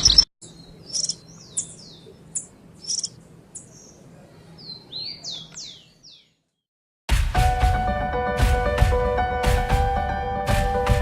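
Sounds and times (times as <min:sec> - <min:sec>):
finch singing: 0:00.0 - 0:06.4.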